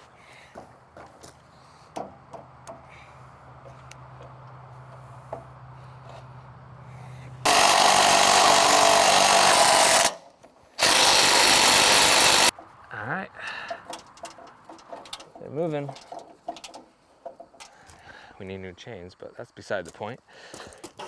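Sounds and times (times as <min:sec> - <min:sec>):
handheld power tool running: 0:07.5 - 0:10.2, 0:10.8 - 0:12.5
light clicks and knocks: 0:13.5 - 0:17.9.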